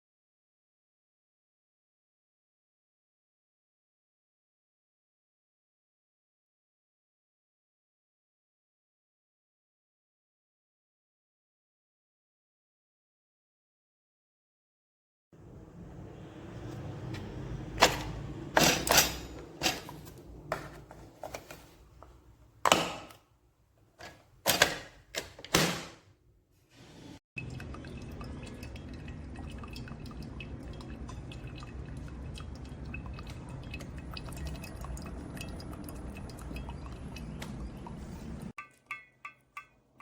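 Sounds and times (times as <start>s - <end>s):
sharp knocks and clinks: 17.1s - 21.5s, 38.6s - 40.0s
liquid dripping and pouring: 27.4s - 39.8s.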